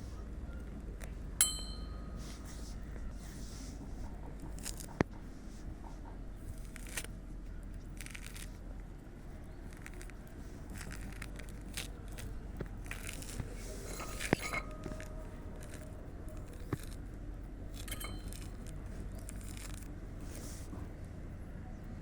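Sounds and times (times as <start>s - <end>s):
steady low background noise: 0.0s - 22.0s
knife blade knocking: 1.4s - 2.2s, 17.8s - 18.8s
knife cutting oranges: 3.4s - 7.2s, 7.8s - 8.6s, 9.4s - 17.1s, 17.7s - 20.8s.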